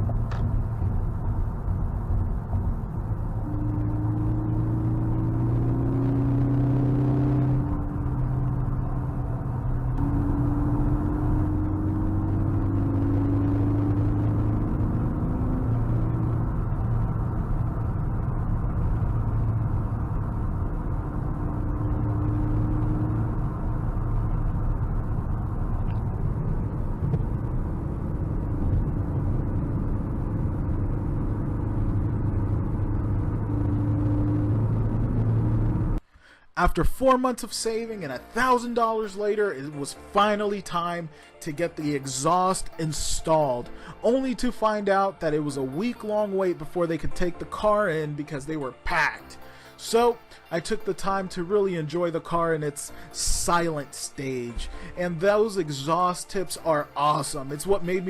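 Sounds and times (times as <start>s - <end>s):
car engine inside cabin: 0.0s - 36.0s
road noise: 0.0s - 58.0s.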